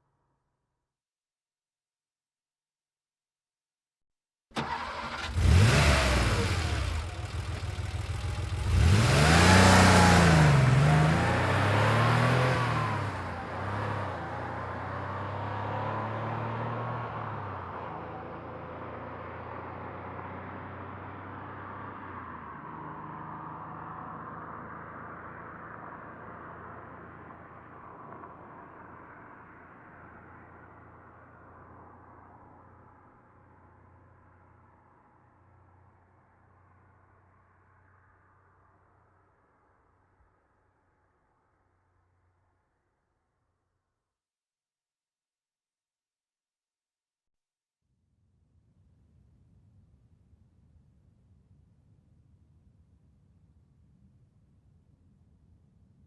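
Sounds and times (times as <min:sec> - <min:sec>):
car engine revving and accelerating: 0:04.8 - 0:27.0.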